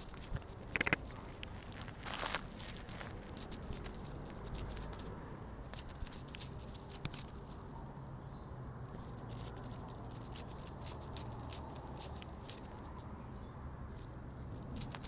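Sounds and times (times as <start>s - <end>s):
fluttering rustling patter: 0.0s - 1.4s, 2.7s - 7.6s.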